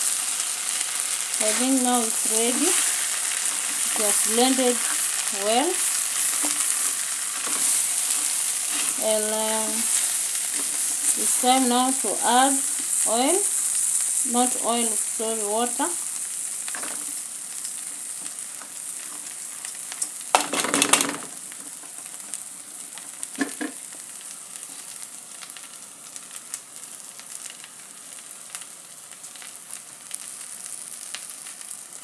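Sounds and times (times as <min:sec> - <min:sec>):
rice sizzling in a pot: 0:00.0 - 0:32.0
stirring scrapes against a pot: 0:05.8 - 0:09.0, 0:09.8 - 0:11.4.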